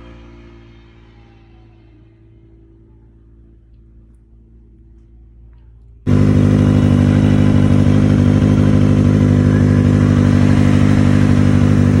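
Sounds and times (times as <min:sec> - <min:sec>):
motorcycle engine idling: 0:02.4 - 0:12.0.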